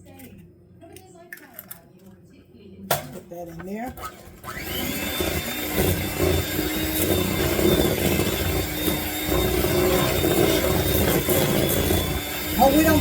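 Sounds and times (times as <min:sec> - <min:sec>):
electric hand mixer whining: 0:04.1 - 0:13.0.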